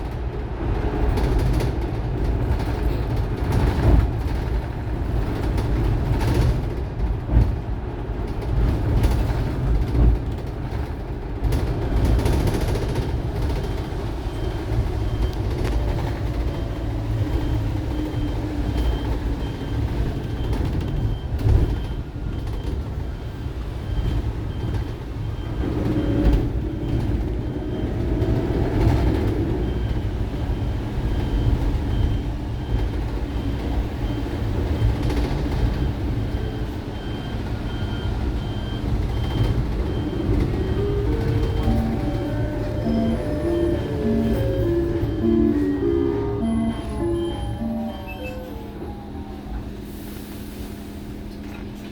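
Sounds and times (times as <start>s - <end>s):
road rumble: 0.0s - 51.9s
short high beep: 40.0s - 49.6s.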